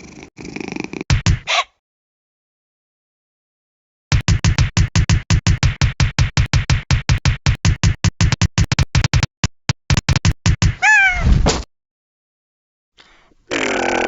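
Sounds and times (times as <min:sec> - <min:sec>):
fast electronic beat: 0:04.1 - 0:10.8
cat meowing: 0:10.8 - 0:11.3.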